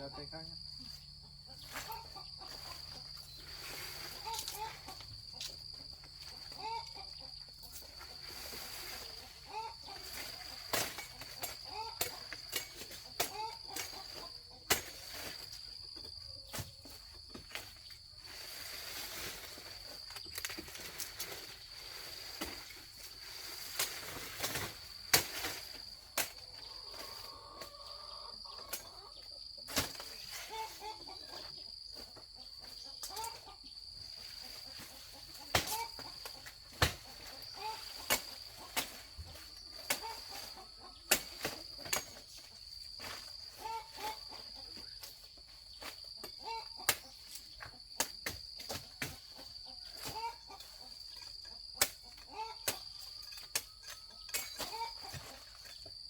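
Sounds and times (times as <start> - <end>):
high insect drone: 0.0 - 56.0
blade chopping sugarcane: 14.7 - 15.1, 23.7 - 25.6, 35.4 - 37.3, 37.9 - 39.0, 41.1 - 42.2.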